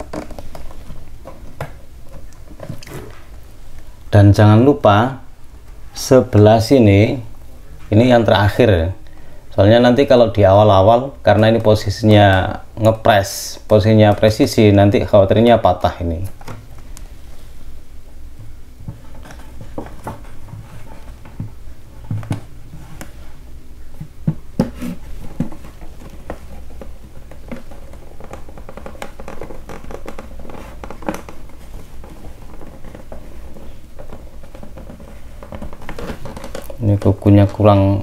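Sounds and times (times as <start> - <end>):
fingernails scratching plastic: 24.6 - 37.2.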